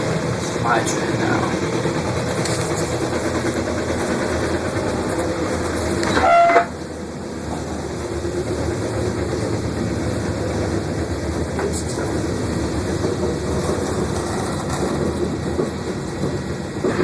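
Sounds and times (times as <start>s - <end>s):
train rumbling on track: 0.0s - 17.0s
brief high-pitched tone: 6.1s - 6.8s.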